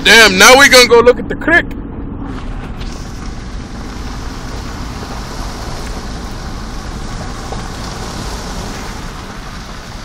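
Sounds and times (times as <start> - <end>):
engine and tyres rumbling: 0.0 - 10.0
water hissing off tyres: 2.8 - 10.0.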